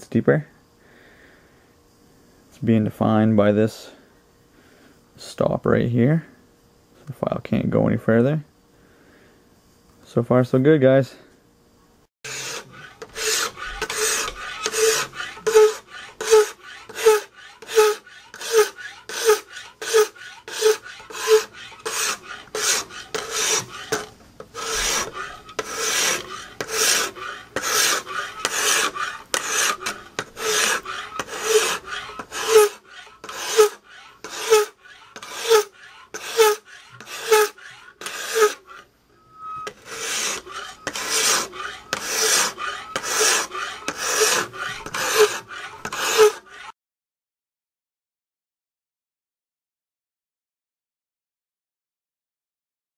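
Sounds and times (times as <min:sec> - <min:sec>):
file rasping on steel blade: 0:12.2 - 0:46.8.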